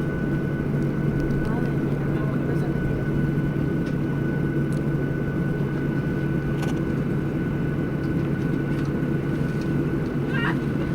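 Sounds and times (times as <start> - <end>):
airplane cabin drone: 0.0 - 10.9.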